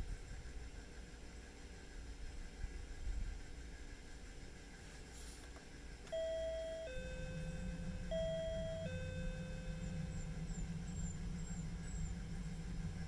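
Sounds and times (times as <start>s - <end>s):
electronic two-tone doorbell chime: 6.1s - 10.3s.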